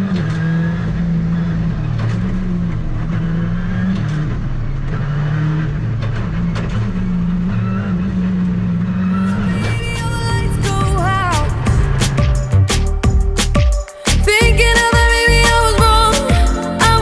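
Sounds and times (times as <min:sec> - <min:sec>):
rally car engine revving: 0:00.0 - 0:13.6
sharp clicks and knocks: 0:05.8 - 0:07.1.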